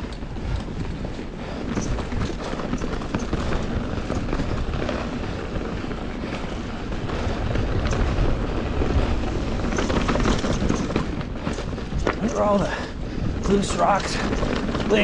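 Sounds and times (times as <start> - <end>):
bike rattling: 0.0 - 15.0
tires crunching over gravel: 0.0 - 15.0
wind rumble on microphone: 0.0 - 15.0.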